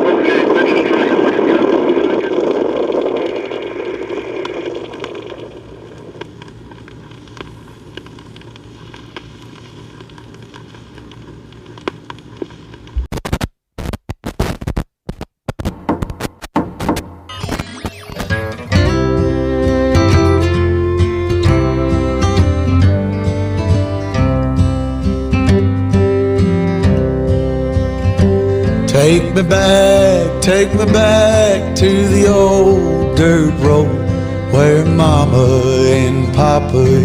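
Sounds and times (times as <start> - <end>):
rocket launch roar: 0.0 - 7.6
record surface hiss and crackle: 0.0 - 37.0.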